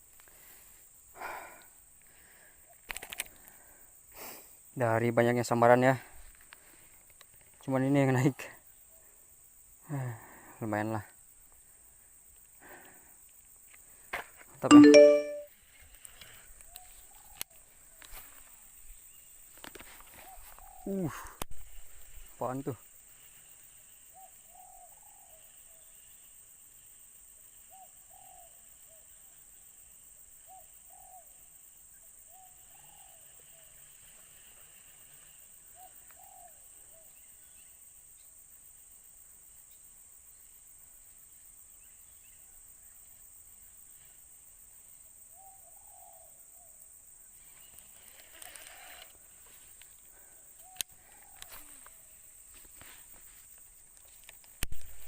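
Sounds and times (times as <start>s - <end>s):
rustle: 0.0s - 14.6s, 15.5s - 55.0s
high insect buzz: 47.2s - 55.0s.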